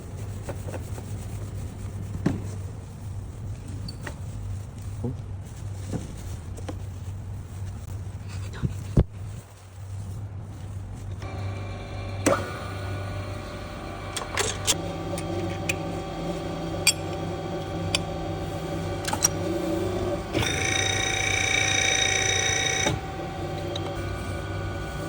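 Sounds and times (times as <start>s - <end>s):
high machine whine: 11.2s - 25.0s
machine motor humming: 11.2s - 25.0s.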